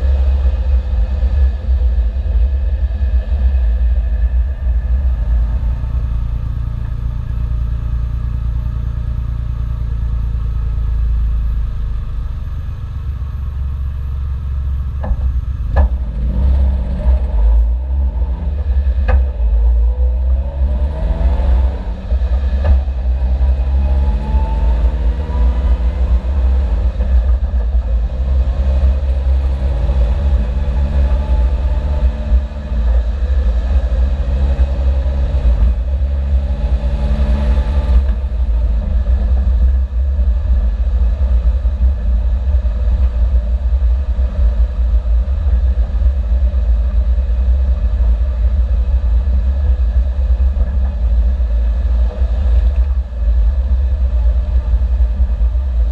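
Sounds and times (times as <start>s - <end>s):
car engine revving: 14.1s - 46.1s
exhaust pops: 14.8s - 17.8s.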